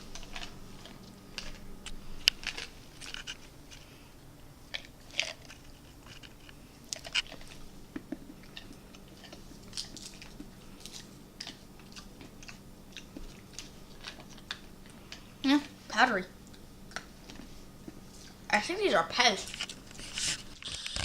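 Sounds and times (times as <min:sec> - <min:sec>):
person crunching hard candy: 0:02.2 - 0:03.9, 0:04.7 - 0:15.2.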